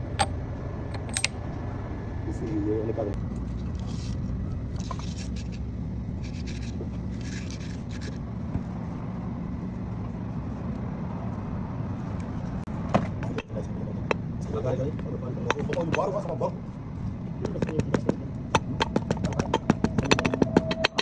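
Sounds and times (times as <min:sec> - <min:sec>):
motor vehicle rumble: 0:00.0 - 0:21.0
scraping or rattling: 0:03.4 - 0:08.3, 0:17.5 - 0:21.0.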